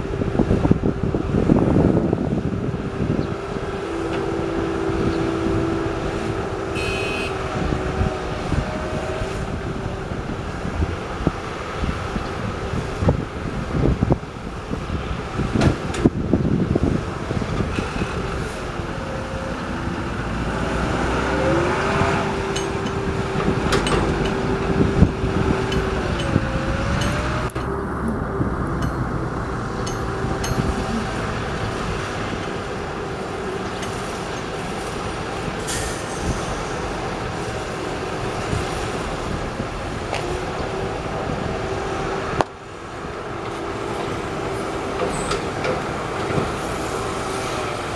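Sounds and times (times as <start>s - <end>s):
heavy machinery engine rumble: 0.0s - 47.9s
whine bending in pitch: 25.7s - 31.7s.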